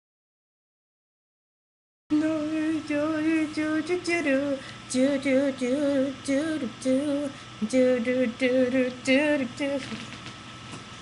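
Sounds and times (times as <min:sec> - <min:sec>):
woman singing: 0:02.1 - 0:10.2.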